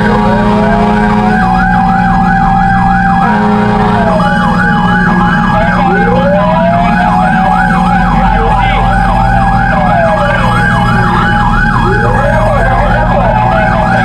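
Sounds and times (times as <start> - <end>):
fire truck siren winding: 0.0 - 14.0
fire truck siren yelping: 0.0 - 14.0
truck engine drone: 0.0 - 14.0.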